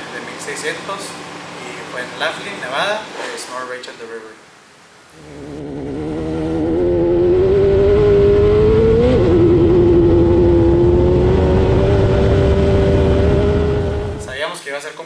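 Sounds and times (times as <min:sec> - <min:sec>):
race car engine at high revs: 0:05.1 - 0:14.4.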